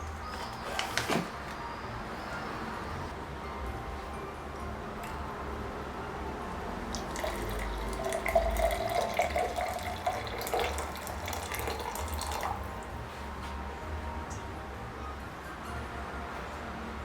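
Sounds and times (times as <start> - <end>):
tap water running into sink: 7.0 - 12.7.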